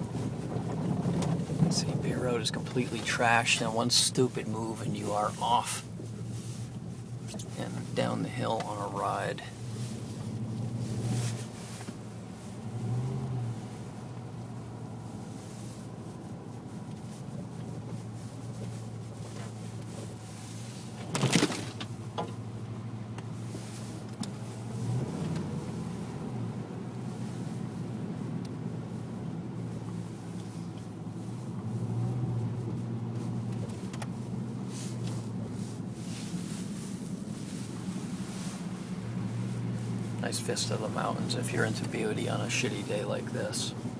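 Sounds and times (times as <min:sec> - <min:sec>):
road noise: 0:00.0 - 0:43.9
vehicle engine hum: 0:00.0 - 0:43.9.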